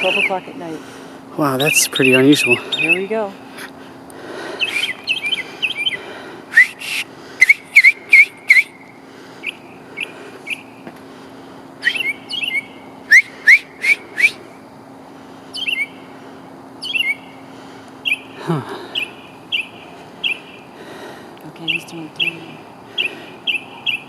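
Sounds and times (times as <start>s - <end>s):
mockingbird whistled song: 0.0s - 0.4s, 1.6s - 3.0s, 4.6s - 10.7s, 11.8s - 14.5s, 15.5s - 16.0s, 16.8s - 17.4s, 18.0s - 20.6s, 23.0s - 24.0s
steady low hum: 0.0s - 24.0s.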